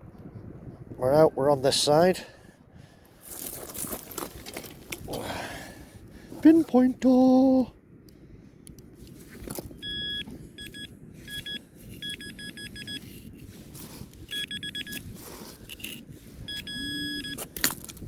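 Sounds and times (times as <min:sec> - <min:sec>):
rustling and scraping of sand: 0:03.1 - 0:07.3, 0:09.0 - 0:10.5, 0:12.9 - 0:18.0
metal detector pinpointer beeping: 0:09.7 - 0:13.4, 0:14.2 - 0:17.7.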